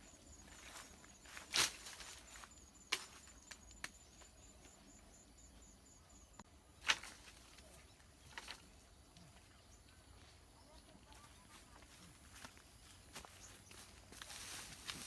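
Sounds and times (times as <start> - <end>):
faint high-pitched chirping pulse: 0.0 - 14.9.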